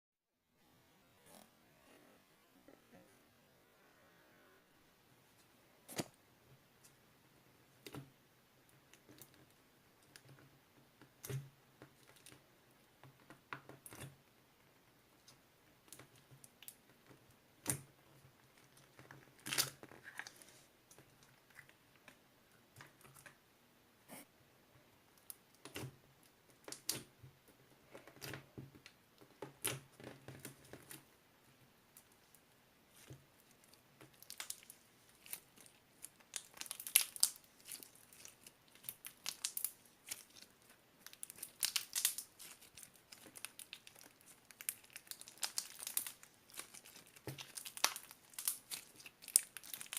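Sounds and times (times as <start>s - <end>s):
paper or plastic crinkling and tearing: 34.1s - 49.9s.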